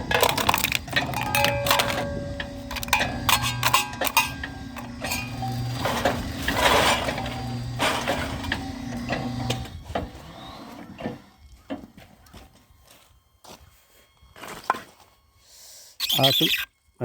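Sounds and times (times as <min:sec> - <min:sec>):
mechanism clicks and knocks: 0:00.0 - 0:06.2
electric motor humming: 0:00.0 - 0:11.7.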